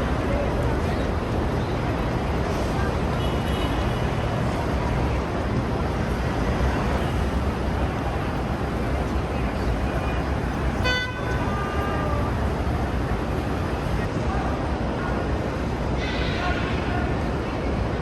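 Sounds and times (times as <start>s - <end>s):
city street traffic: 0.0s - 18.0s
car horn toot: 10.8s - 12.0s.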